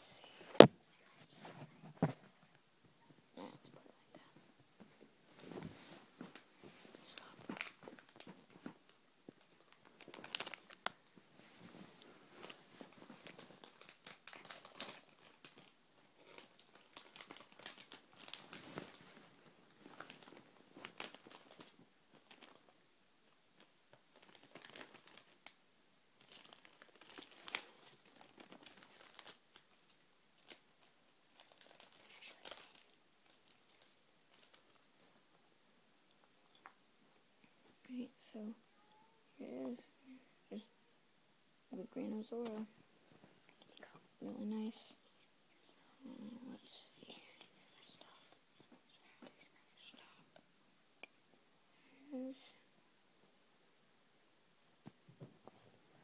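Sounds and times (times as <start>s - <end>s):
packaging crinkling and tearing: 9.8s - 11.0s, 13.2s - 19.0s, 20.0s - 22.6s, 24.1s - 25.6s, 26.2s - 34.8s.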